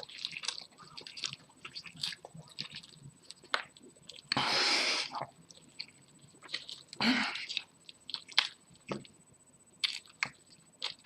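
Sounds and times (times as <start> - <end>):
wet chewing and smacking: 0.0 - 11.0
hissing rush of breath: 4.4 - 5.1.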